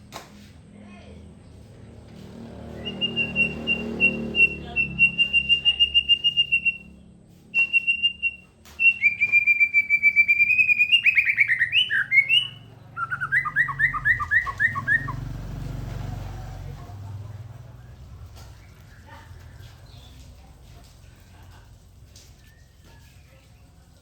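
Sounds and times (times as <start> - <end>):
songbird trilling: 2.7 - 6.8, 7.6 - 15.2.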